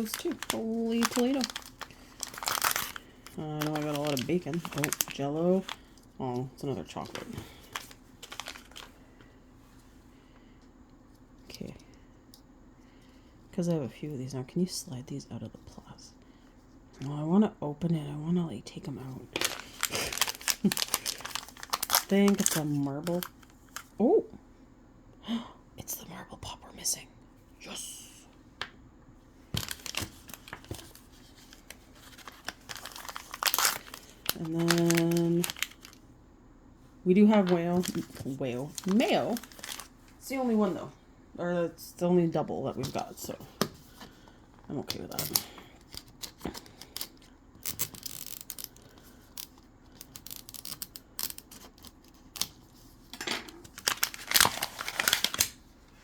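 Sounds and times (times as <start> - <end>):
plastic packaging crinkling and tearing: 0.0 - 6.0, 6.7 - 9.0, 19.3 - 24.0, 29.6 - 36.0, 37.3 - 40.1, 44.9 - 55.7.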